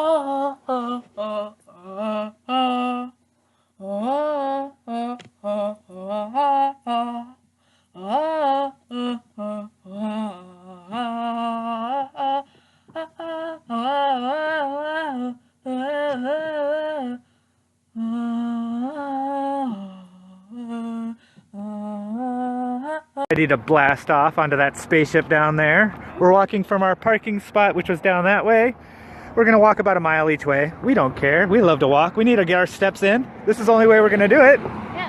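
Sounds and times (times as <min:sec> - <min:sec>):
person humming a tune: 0:00.0 - 0:03.2, 0:03.8 - 0:07.4, 0:08.0 - 0:17.3, 0:17.9 - 0:23.3.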